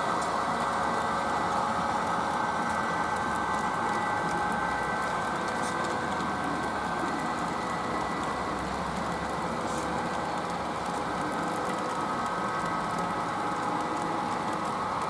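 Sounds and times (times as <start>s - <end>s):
model train humming: 0.0s - 15.0s.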